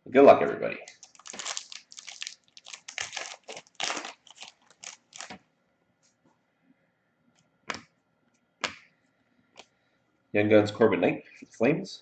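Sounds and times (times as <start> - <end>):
foil wrapper tearing and crinkling: 0.9 - 5.4.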